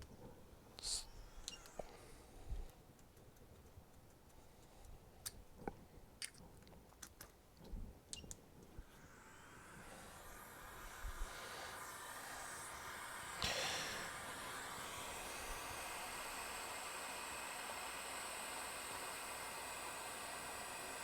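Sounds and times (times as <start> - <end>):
hot air station blowing hiss: 8.8 - 21.0.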